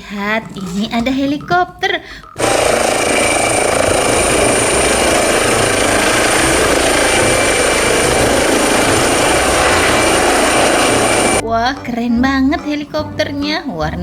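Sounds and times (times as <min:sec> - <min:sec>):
helicopter rotor and engine: 0:02.4 - 0:11.4
high whine: 0:02.4 - 0:11.4.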